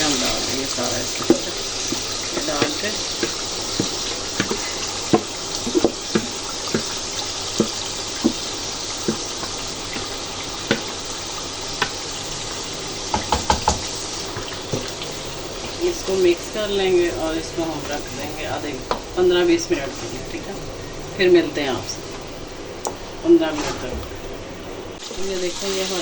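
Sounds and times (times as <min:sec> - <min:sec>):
chicken sizzling in a pot: 0:00.0 - 0:23.6, 0:24.3 - 0:26.0
spoon knocking and scraping pot: 0:01.2 - 0:11.0, 0:13.1 - 0:14.9.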